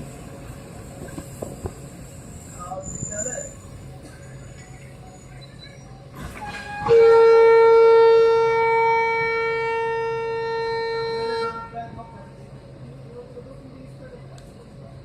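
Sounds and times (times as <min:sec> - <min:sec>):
locomotive air horn blast: 0:06.2 - 0:11.8.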